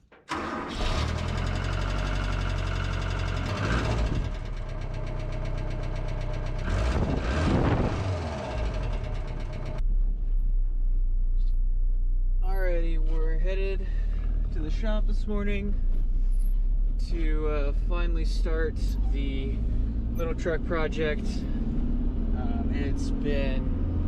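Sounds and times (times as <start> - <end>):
engine revving: 0.3 - 4.5, 6.4 - 9.8, 18.0 - 24.0.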